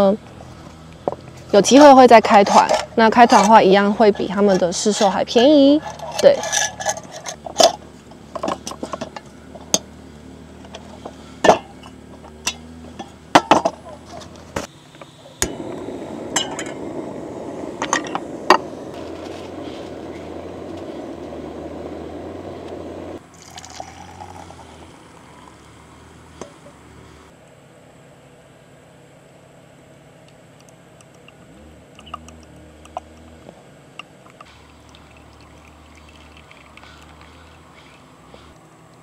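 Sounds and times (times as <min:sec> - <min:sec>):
hot water pouring: 0:15.4 - 0:26.5, 0:34.4 - 0:37.8
coffee gear clinking: 0:23.4 - 0:25.7.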